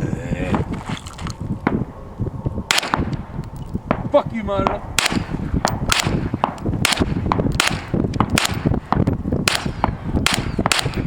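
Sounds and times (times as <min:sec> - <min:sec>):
rapid gunshots: 0:04.7 - 0:11.0.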